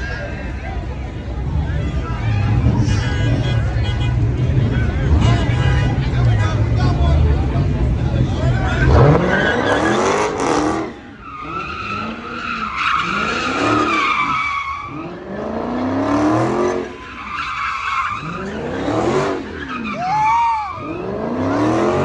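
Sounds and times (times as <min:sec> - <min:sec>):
car engine revving: 0:01.4 - 0:20.1, 0:20.8 - 0:22.0.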